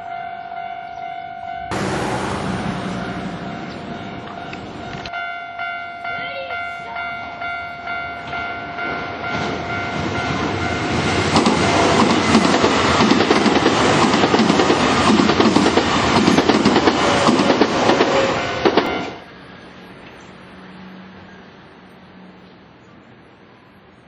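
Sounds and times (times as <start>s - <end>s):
crossing warning bell ringing: 0.0s - 13.6s, 17.5s - 22.4s
train wheels clattering over rails: 8.2s - 19.3s.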